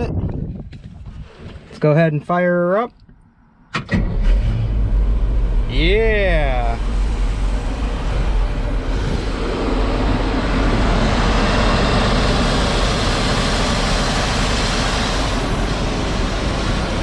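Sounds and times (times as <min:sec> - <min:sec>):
truck engine rumbling: 0:02.8 - 0:17.0.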